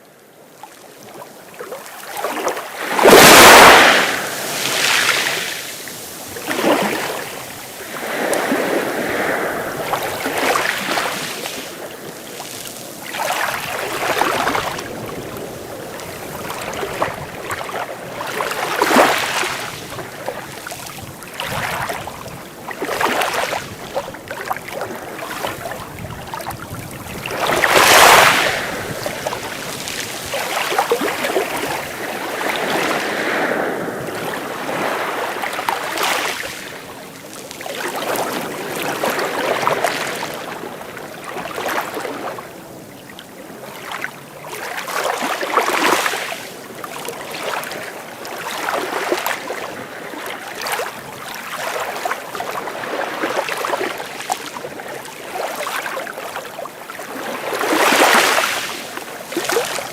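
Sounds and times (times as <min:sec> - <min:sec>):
small waves breaking on beach: 0:00.0 - 0:59.9.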